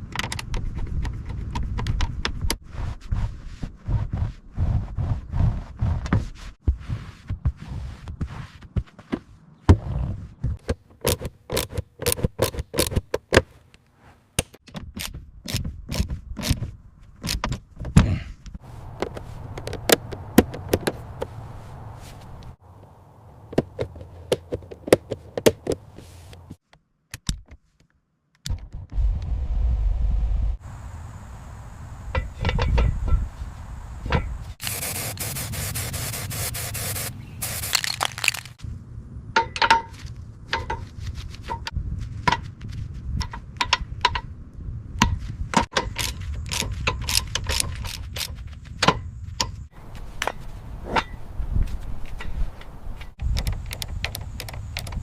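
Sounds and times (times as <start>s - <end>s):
steady low rumble: 28.6s - 36.2s, 38.5s - 45.6s
low steady rumble: 28.9s - 34.6s.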